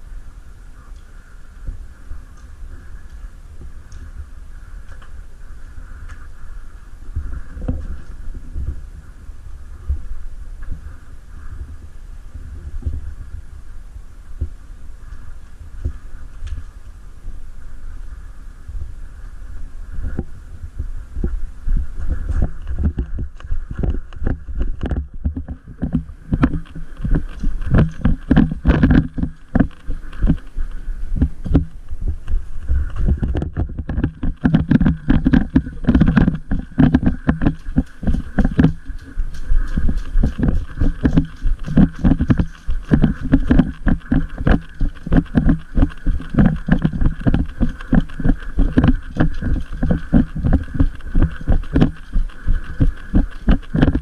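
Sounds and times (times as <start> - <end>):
dull thumps and knocks: 22.4 - 30.5, 32.7 - 54.0.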